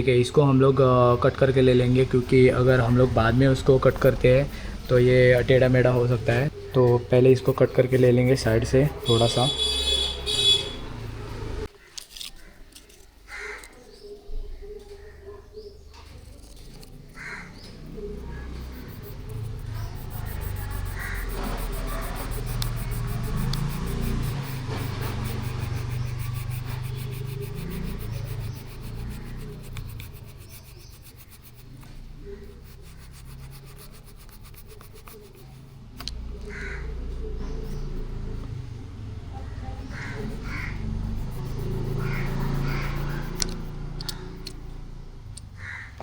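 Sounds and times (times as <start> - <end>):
faint steady hum: 17.9 - 35.8
sharp click: 41.2 - 44.6.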